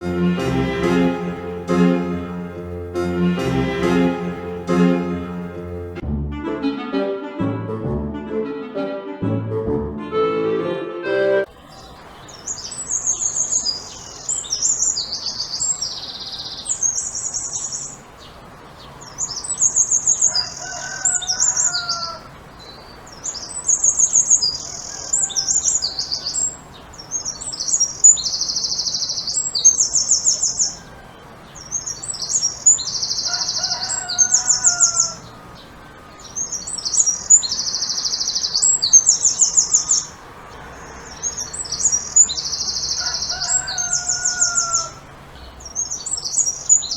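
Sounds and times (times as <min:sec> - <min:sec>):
songbird trilling: 0:11.7 - 0:18.4, 0:19.0 - 0:30.9, 0:31.6 - 0:35.3, 0:36.2 - 0:40.2, 0:40.8 - 0:46.9.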